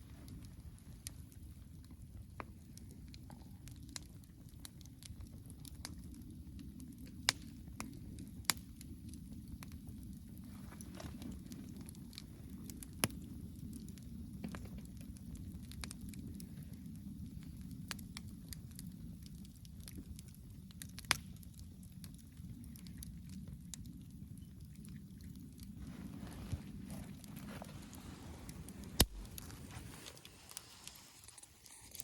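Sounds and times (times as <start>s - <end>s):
campfire crackling and popping: 0.0s - 32.0s.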